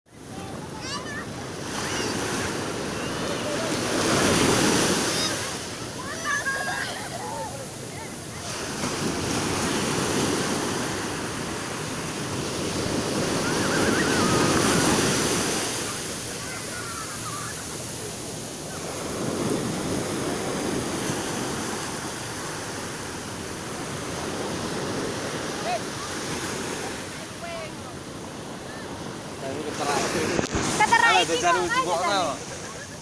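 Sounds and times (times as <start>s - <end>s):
sea waves breaking on beach: 0.1s - 33.0s.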